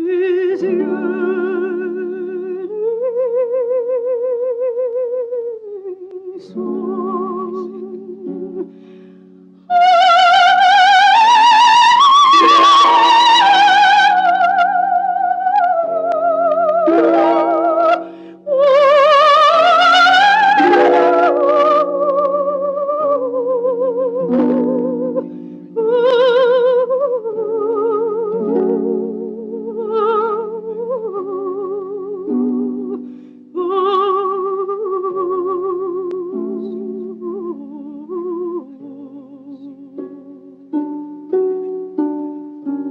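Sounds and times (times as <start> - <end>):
soprano singing with vibrato: 0.0 - 9.0, 9.6 - 42.1
instrumental accompaniment chords: 15.9 - 18.6.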